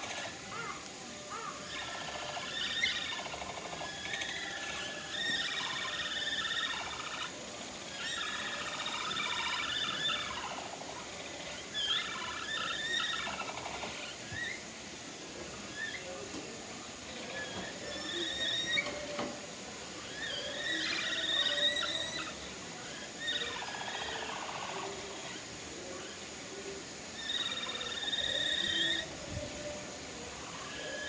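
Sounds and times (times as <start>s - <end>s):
capybaras rising chirps: 0.0s - 14.6s, 20.0s - 25.4s
capybaras fluttering calls: 0.0s - 31.0s.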